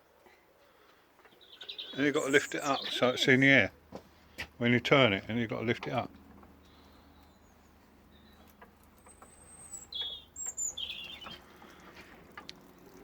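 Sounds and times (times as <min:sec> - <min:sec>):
bird chirps and whistles: 0:09.4 - 0:11.4.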